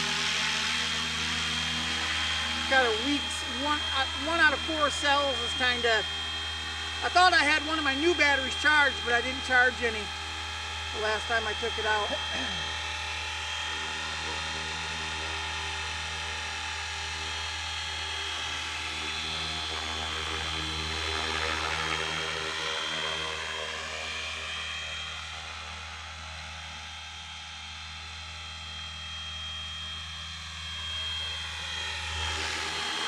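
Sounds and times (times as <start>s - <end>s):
rc helicopter rotor and motor whine: 0.0s - 33.0s.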